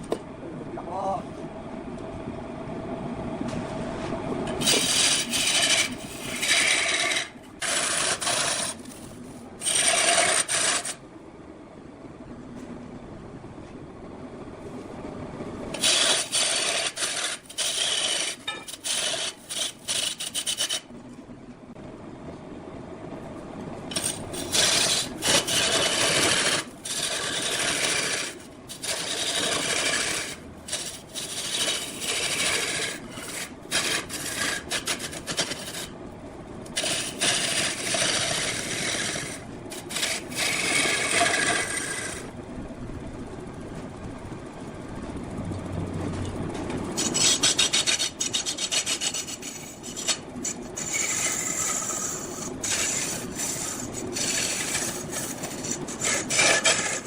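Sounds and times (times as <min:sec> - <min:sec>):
hand tool scraping wood on lathe: 0:04.6 - 0:11.0, 0:15.8 - 0:20.9, 0:23.9 - 0:35.9, 0:36.7 - 0:42.3, 0:47.0 - 0:57.0.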